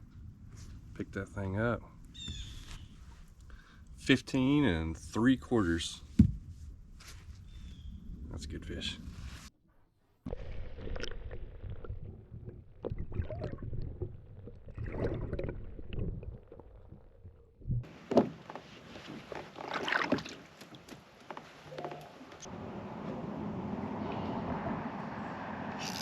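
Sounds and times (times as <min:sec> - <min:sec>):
water against hull: 0:10.3 - 0:22.5.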